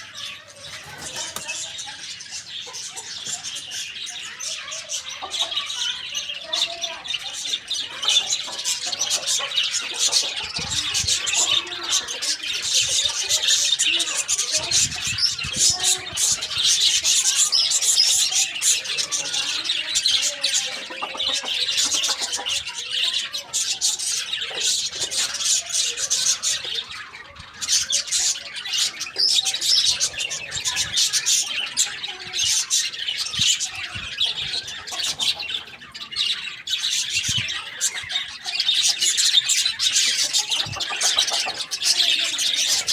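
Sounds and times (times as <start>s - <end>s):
flock of birds chirping and squawking: 0.0s - 42.9s.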